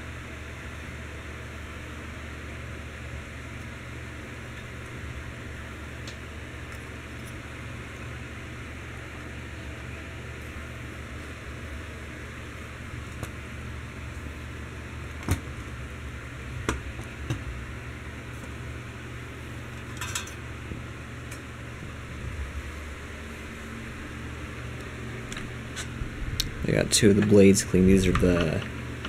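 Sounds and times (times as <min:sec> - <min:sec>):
steady background hiss: 0:01.4 - 0:29.0
hard parts clicking and knocking: 0:28.1 - 0:28.7.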